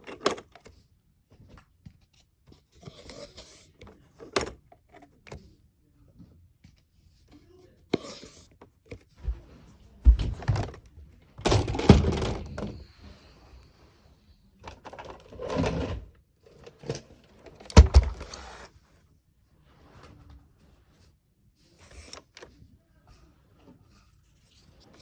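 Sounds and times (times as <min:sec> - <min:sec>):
plastic scraping: 0:14.6 - 0:18.7.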